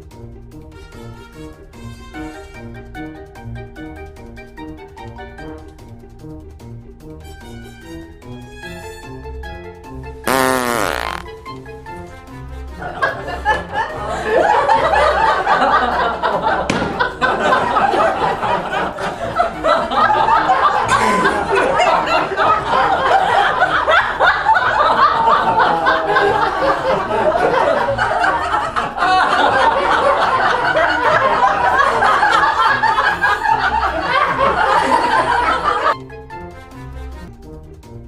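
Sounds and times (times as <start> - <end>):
people laughing and chuckling: 12.7 - 36.0.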